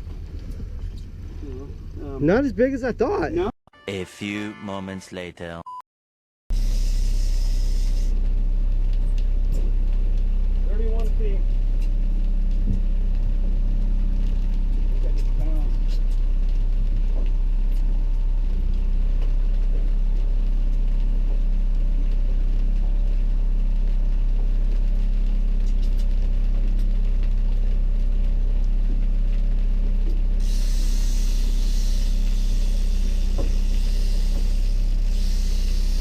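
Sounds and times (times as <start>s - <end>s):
steady hiss: 30.4s - 36.0s.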